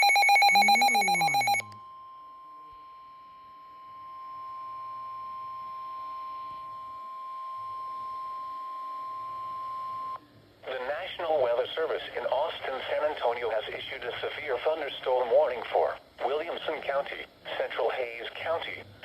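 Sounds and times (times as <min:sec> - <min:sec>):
steady warning alarm tone: 0:00.0 - 0:01.6.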